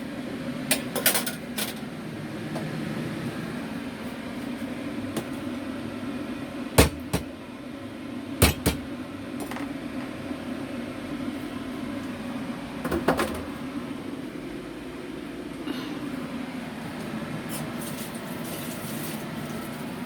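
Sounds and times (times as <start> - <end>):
steady hum: 0.0 - 18.2
sharp kitchen knocks and clatters: 6.8 - 7.3, 8.4 - 9.7, 12.8 - 13.5.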